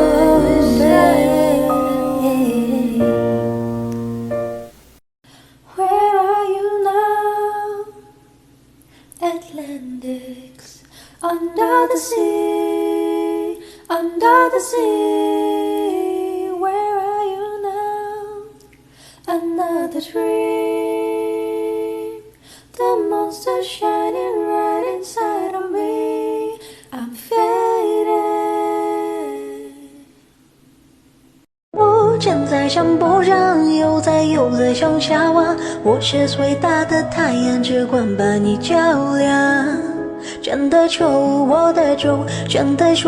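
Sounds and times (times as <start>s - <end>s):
woman singing a cappella: 0.0s - 3.6s, 5.6s - 8.4s, 9.1s - 30.2s, 31.8s - 43.0s
singer breathing: 10.8s - 11.2s, 18.8s - 19.3s, 22.4s - 22.7s.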